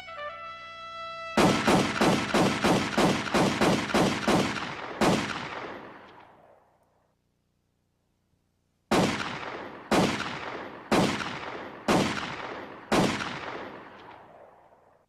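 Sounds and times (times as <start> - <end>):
echoing gunshots: 1.4 - 6.8, 8.9 - 15.0.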